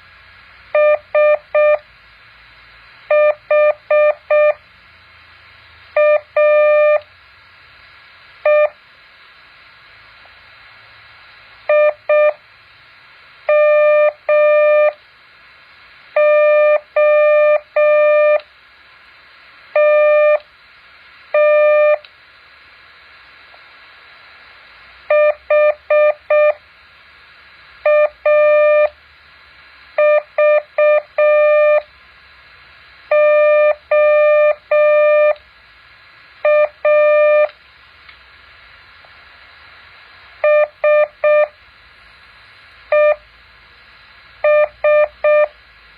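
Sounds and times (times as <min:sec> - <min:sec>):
faint steady hiss: 0:00.0 - 0:45.9
morse code tone: 0:00.8 - 0:01.8, 0:03.1 - 0:04.6, 0:06.0 - 0:07.0, 0:08.4 - 0:08.8, 0:11.7 - 0:12.4, 0:13.5 - 0:15.0, 0:16.2 - 0:18.4, 0:19.8 - 0:20.4, 0:21.4 - 0:22.0, 0:25.1 - 0:26.6, 0:27.8 - 0:28.9, 0:30.0 - 0:31.8, 0:33.1 - 0:35.4, 0:36.4 - 0:37.5, 0:40.4 - 0:41.6, 0:42.9 - 0:43.2, 0:44.4 - 0:45.6.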